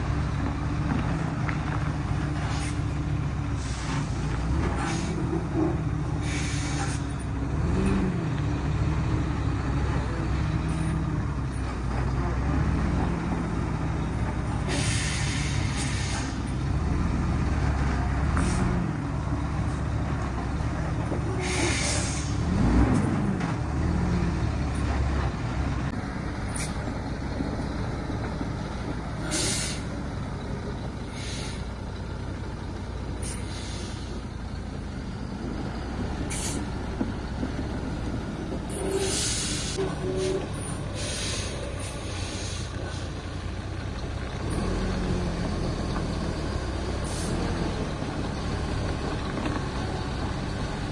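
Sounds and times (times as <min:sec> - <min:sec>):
truck diesel engine running: 0:00.0 - 0:50.9
short hisses: 0:06.2 - 0:07.0, 0:14.7 - 0:16.4, 0:21.4 - 0:22.4, 0:29.2 - 0:29.9, 0:31.1 - 0:31.6, 0:36.3 - 0:36.7, 0:38.9 - 0:39.8, 0:41.0 - 0:43.0.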